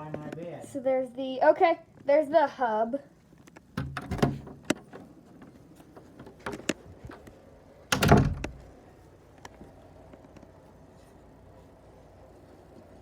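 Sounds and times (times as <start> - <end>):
door thudding: 3.8 - 4.8, 7.9 - 8.7.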